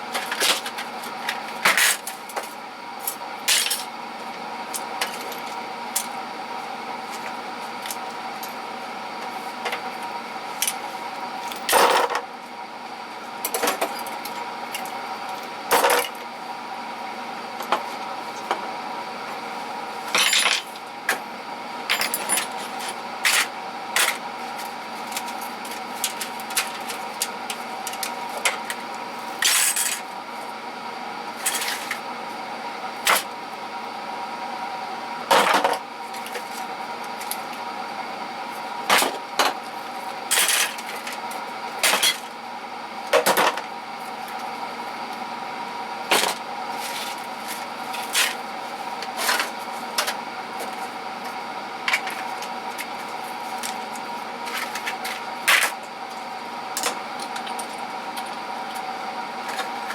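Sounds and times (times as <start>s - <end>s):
steady background hum: 0.0s - 59.9s
tools clattering in a toolbox: 20.1s - 20.8s, 29.4s - 30.0s.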